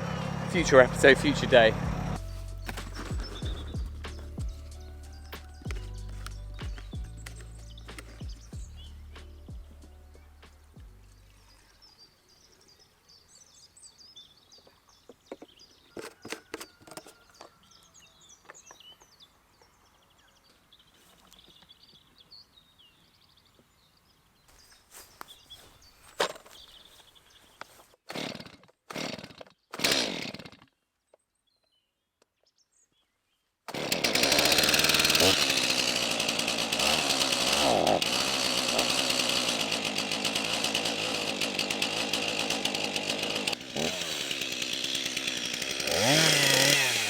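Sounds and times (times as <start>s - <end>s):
chainsaw running: 0.0s - 9.3s, 28.1s - 30.7s, 33.7s - 47.0s.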